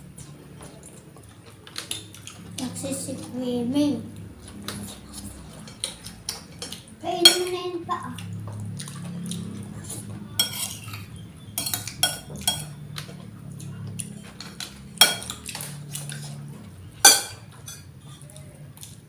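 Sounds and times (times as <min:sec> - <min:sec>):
cutlery clinking on plates: 0:04.7 - 0:07.6, 0:10.0 - 0:13.3, 0:14.0 - 0:18.3.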